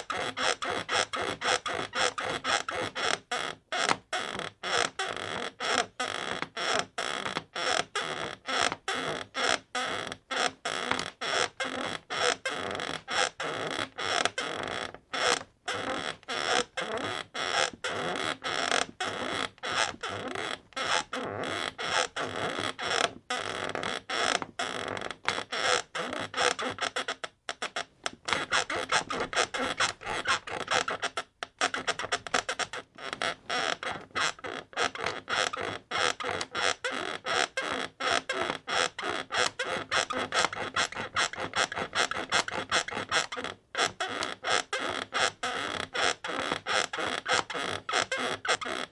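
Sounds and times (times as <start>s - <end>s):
bed creaking: 12.3s - 26.9s, 27.7s - 36.8s.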